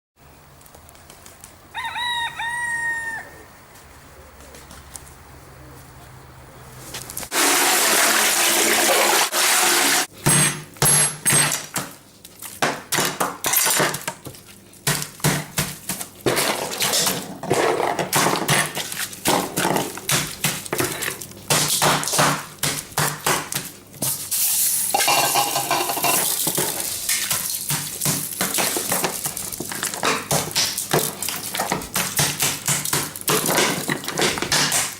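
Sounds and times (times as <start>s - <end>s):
rooster crowing: 1.7s - 3.6s.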